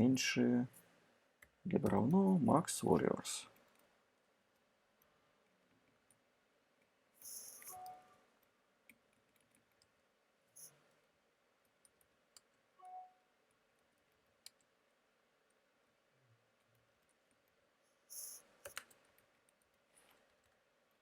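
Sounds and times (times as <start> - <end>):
keyboard clicks: 1.4 - 2.3, 6.8 - 10.0, 16.6 - 21.0.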